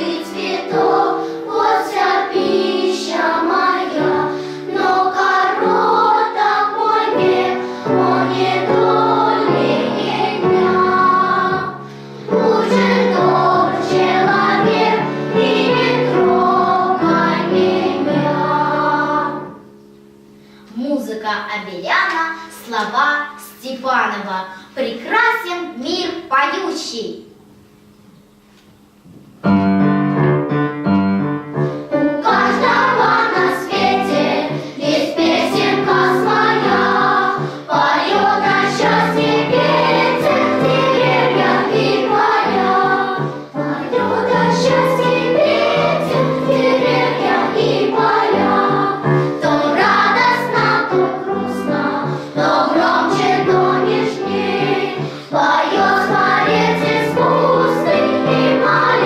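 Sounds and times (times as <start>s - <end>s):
children's choir singing: 0.0s - 19.7s, 31.9s - 59.0s
piano accompaniment: 0.0s - 20.4s, 28.8s - 59.0s.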